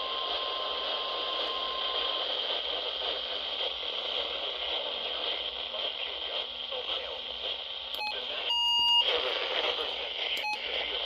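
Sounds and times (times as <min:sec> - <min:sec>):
faint steady tone: 0:00.0 - 0:05.3
radio static hiss: 0:00.0 - 0:11.0.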